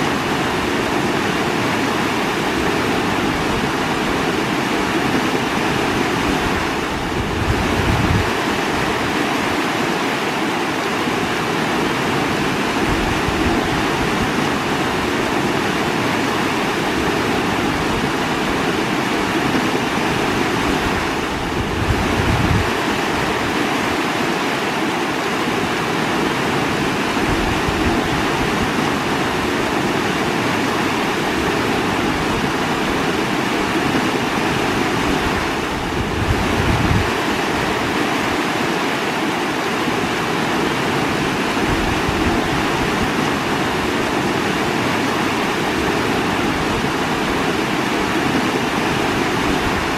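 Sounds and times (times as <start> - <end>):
running water rushing: 0.0 - 49.9.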